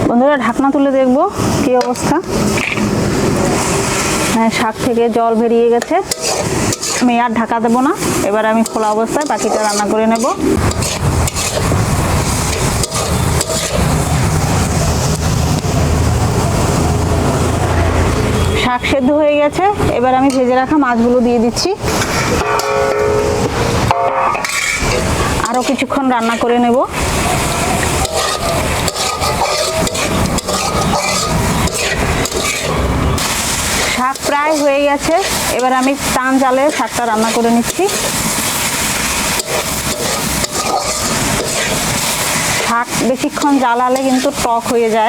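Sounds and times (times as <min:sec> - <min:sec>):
greens sizzling in a pan: 0:00.4 - 0:17.3, 0:21.6 - 0:45.0
spatula scraping a pan: 0:01.8 - 0:04.7, 0:05.8 - 0:15.4, 0:21.8 - 0:45.0.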